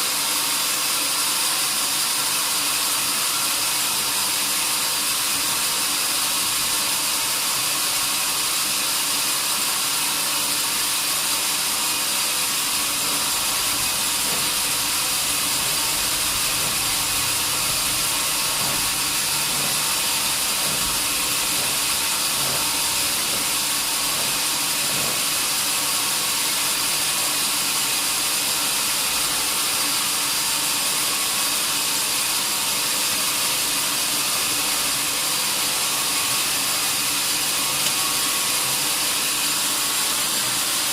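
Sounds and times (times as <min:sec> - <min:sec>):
sawmill saw hissing: 0:00.0 - 0:40.9.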